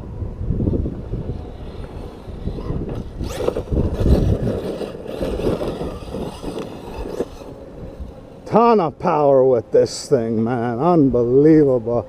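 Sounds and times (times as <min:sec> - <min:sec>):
rc truck electric motor running: 0:00.6 - 0:09.3.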